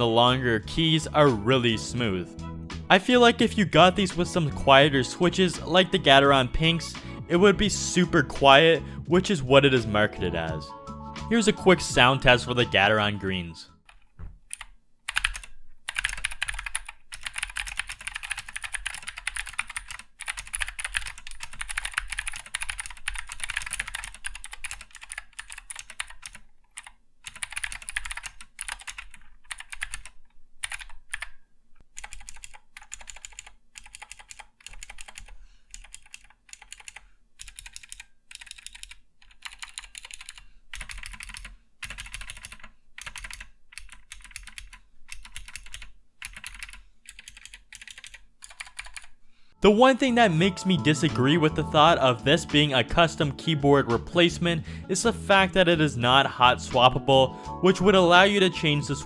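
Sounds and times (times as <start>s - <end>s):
typing on mechanical keyboard: 13.9s - 31.3s, 31.9s - 49.2s.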